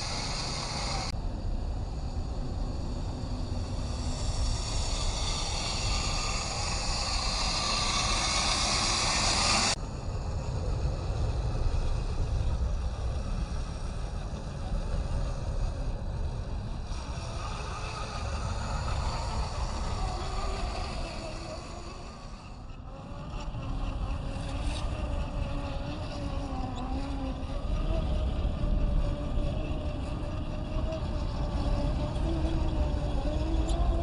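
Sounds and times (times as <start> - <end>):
wind on microphone: 0.0 - 34.0
toy car driving over rough ground: 16.7 - 34.0.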